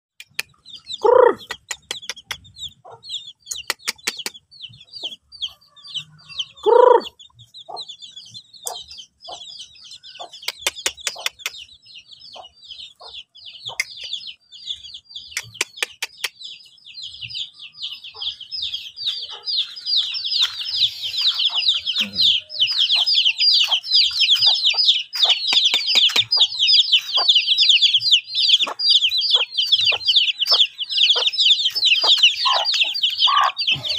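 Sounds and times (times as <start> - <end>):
chicken calls: 0.2 - 33.9
chicks peeping: 0.2 - 33.9
sharp clicks: 25.4 - 26.6.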